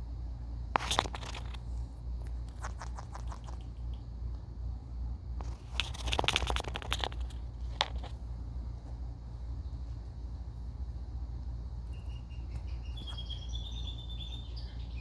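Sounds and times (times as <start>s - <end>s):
steady low hum: 0.0s - 15.0s
parrot pecking and scraping: 0.8s - 4.1s, 5.4s - 8.3s.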